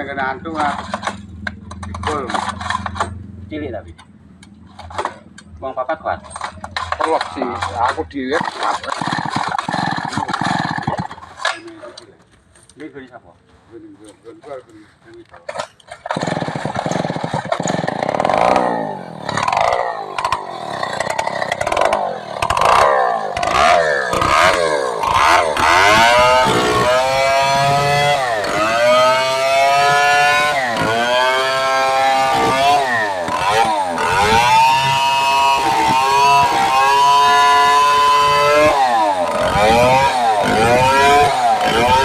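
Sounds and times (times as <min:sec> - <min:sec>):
chainsaw revving: 0:06.3 - 0:11.7, 0:15.9 - 0:42.0.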